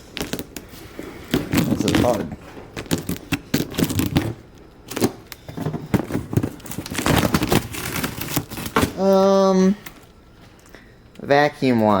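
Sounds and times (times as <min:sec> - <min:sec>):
packaging rustling: 0:00.0 - 0:10.7
parts knocking and clattering: 0:01.3 - 0:09.0.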